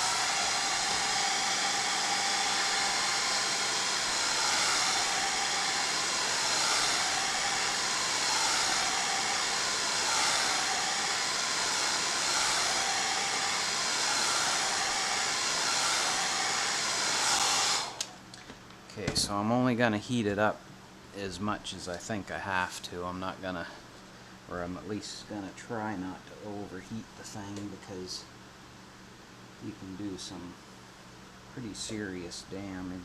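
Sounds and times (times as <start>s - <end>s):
hair dryer blowing: 0.0s - 18.2s.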